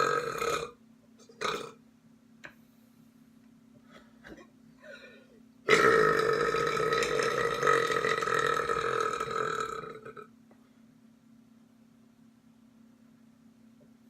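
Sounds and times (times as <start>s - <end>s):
long loud belch: 0.0s - 1.8s, 5.7s - 10.3s.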